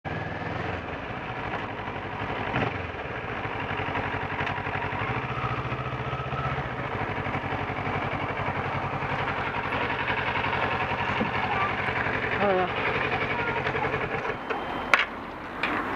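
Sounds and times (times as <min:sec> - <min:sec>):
motorcycle engine running: 0:00.0 - 0:15.9.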